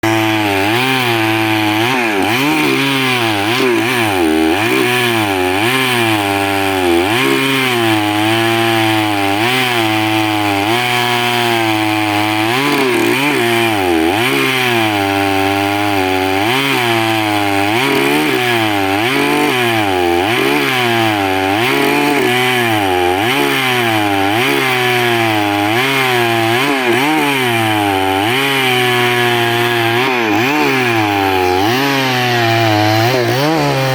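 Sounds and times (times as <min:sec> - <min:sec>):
chainsaw cutting wood: 0:00.0 - 0:33.9.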